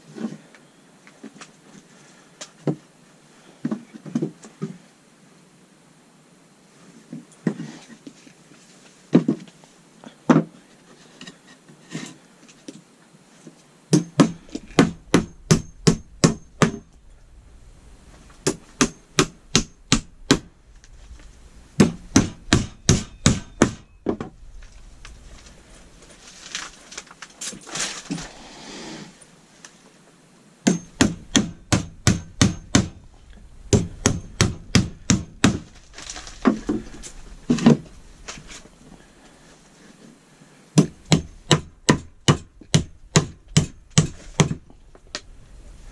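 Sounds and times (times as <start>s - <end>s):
hammer driving nails into wood: 13.9s - 16.9s, 18.4s - 20.5s, 21.8s - 23.9s, 30.7s - 33.0s, 33.7s - 35.7s, 40.8s - 44.6s.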